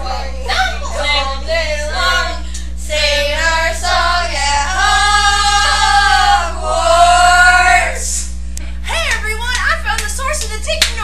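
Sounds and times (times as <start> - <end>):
young voices singing together: 0.0 - 8.3.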